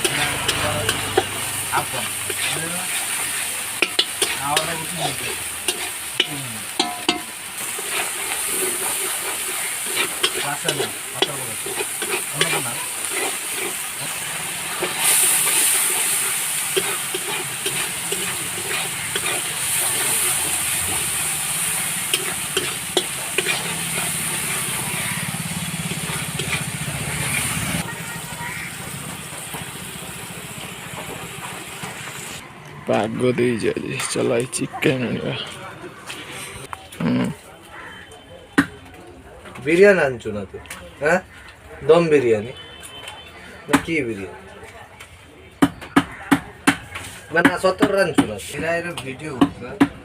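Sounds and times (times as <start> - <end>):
spatula scraping a pan: 0.0 - 27.8
food sizzling in oil: 0.0 - 32.4.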